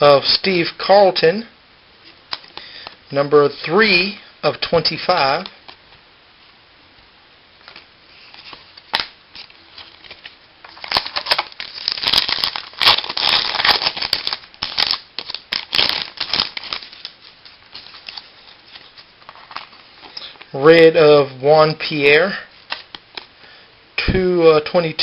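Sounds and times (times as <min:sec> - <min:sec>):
wrapper tearing and crinkling: 0:08.4 - 0:20.4.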